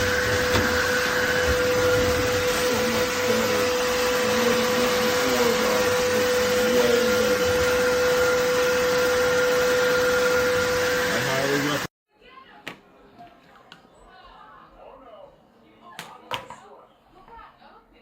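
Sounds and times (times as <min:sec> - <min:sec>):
vacuum cleaner whining: 0:00.0 - 0:11.9.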